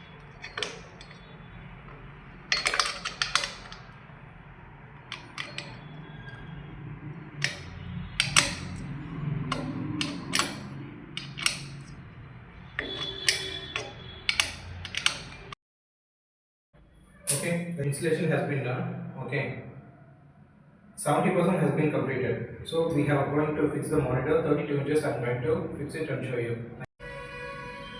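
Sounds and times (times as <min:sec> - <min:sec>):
metallic clicks and knocks: 0:00.0 - 0:04.0, 0:05.0 - 0:06.5, 0:07.4 - 0:12.0, 0:12.6 - 0:15.6.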